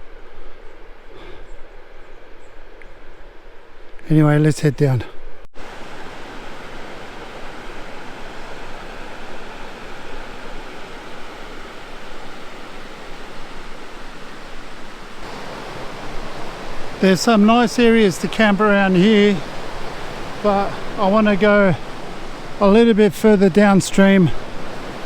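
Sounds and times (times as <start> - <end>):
river water rushing: 5.6 - 25.0.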